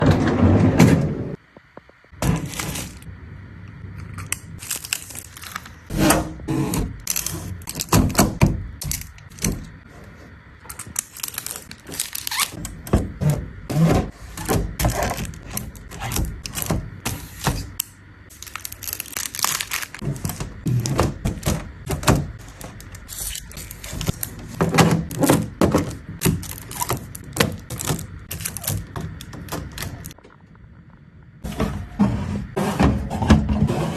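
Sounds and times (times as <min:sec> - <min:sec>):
wrappers crinkling: 0:02.2 - 0:03.1, 0:04.1 - 0:05.9, 0:07.0 - 0:08.2, 0:10.7 - 0:12.6, 0:14.8 - 0:30.2.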